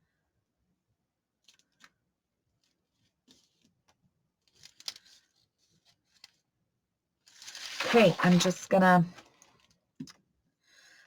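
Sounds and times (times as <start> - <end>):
paper rustling: 7.4 - 9.0.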